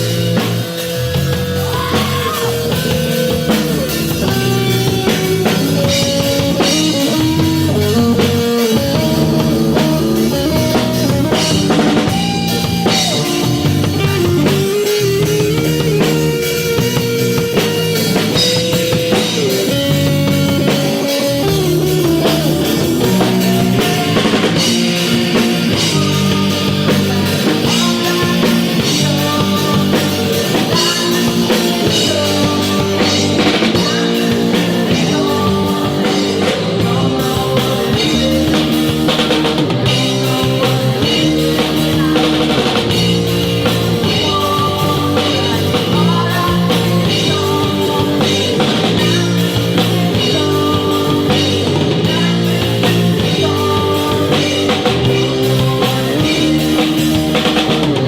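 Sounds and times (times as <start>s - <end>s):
rock band playing: 0.0s - 58.0s.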